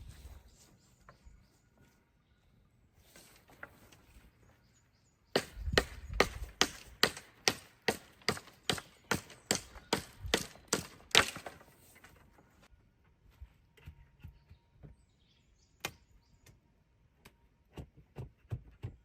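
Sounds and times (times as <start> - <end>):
wood chopping blows: 5.4 - 11.6.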